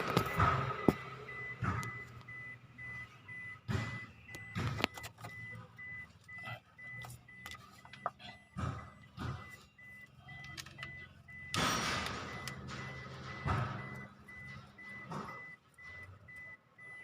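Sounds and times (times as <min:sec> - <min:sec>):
faint high beep: 0:09.4 - 0:11.6.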